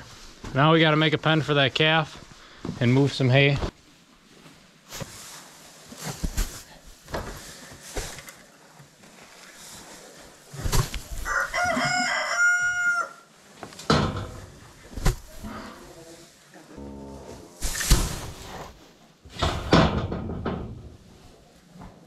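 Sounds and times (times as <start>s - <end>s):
rooster crowing: 11.2s - 13.3s
sharp knocks and bangs: 19.4s - 20.8s.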